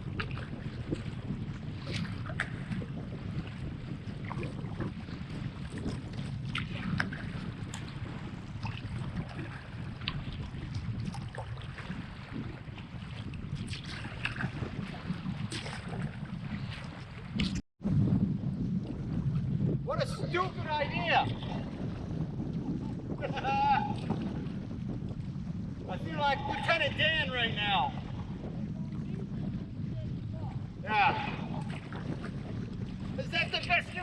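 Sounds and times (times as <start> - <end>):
kayak paddle strokes splashing: 0.0 - 17.6, 30.6 - 34.0
waves slapping hull: 0.0 - 34.0
wind buffeting microphone: 0.0 - 34.0.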